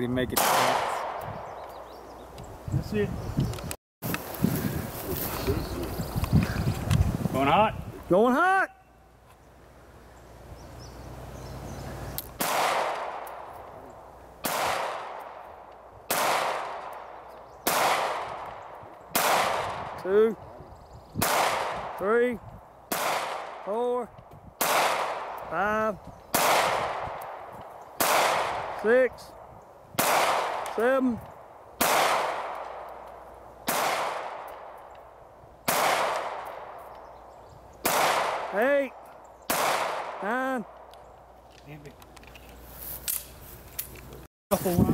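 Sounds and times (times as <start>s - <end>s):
handgun shots with echo: 0.3s - 1.2s, 12.4s - 13.6s, 14.4s - 15.5s, 16.1s - 19.9s, 22.9s - 23.6s, 24.6s - 25.5s, 26.3s - 28.8s, 30.0s - 30.8s, 31.8s - 33.0s, 33.6s - 34.8s, 35.7s - 36.9s, 37.8s - 38.6s, 39.5s - 40.2s.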